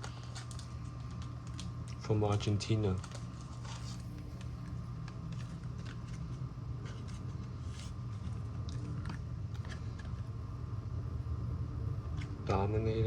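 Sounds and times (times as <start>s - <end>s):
cards clicking and rustling: 0.0s - 10.3s
low hum: 3.0s - 13.0s.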